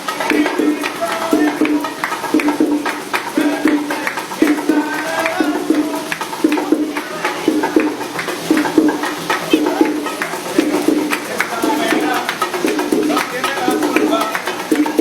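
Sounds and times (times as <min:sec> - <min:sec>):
percussion music: 0:00.0 - 0:15.0.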